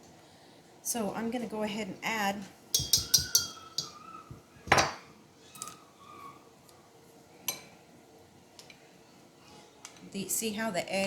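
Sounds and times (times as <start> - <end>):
utensil clinking against bowl: 2.7 - 4.0.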